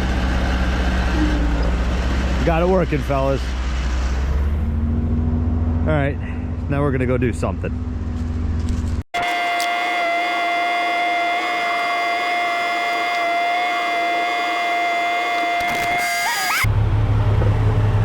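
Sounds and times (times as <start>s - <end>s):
small motor whining: 9.2s - 16.7s.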